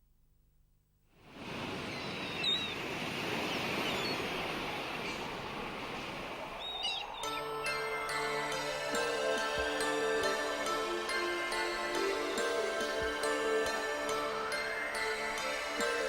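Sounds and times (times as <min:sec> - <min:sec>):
song intro music: 0:07.2 - 0:16.0.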